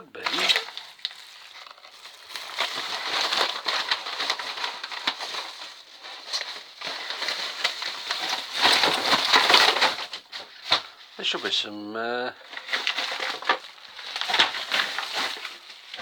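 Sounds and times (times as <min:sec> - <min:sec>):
packaging rustling and crinkling: 0:00.1 - 0:11.7, 0:12.3 - 0:16.0
small clicks and crackles: 0:00.2 - 0:11.0, 0:12.4 - 0:16.0.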